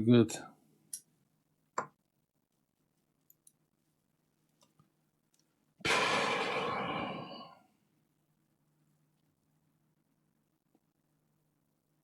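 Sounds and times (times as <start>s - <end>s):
person sighing: 5.8s - 7.6s.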